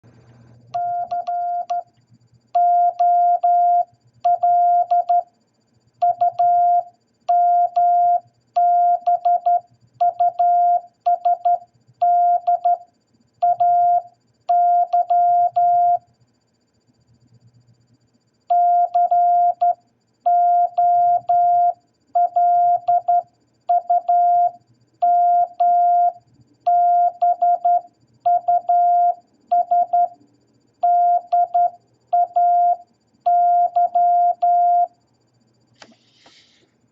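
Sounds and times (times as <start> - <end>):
morse code beeping tone: 0.8 - 1.8, 2.6 - 5.2, 6.0 - 12.8, 13.4 - 16.0, 18.5 - 30.1, 30.8 - 34.9.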